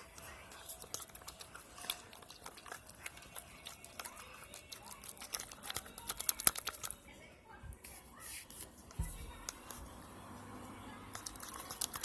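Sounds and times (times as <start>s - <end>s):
hands squishing sticky slime: 0.0s - 7.0s.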